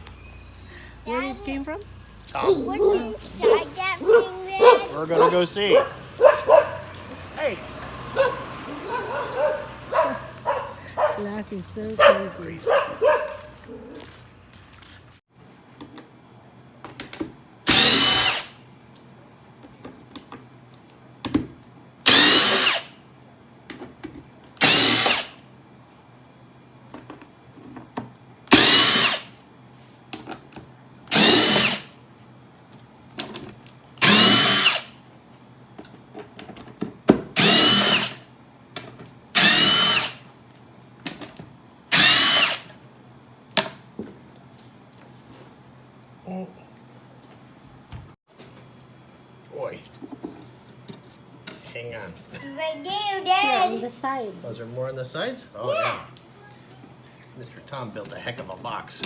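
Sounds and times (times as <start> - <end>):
power drill motor whine: 17.7 - 18.6, 22.1 - 22.9, 24.6 - 25.4, 28.5 - 29.3, 31.1 - 31.9, 34.0 - 34.9, 37.4 - 38.2, 39.4 - 40.2, 41.9 - 42.8.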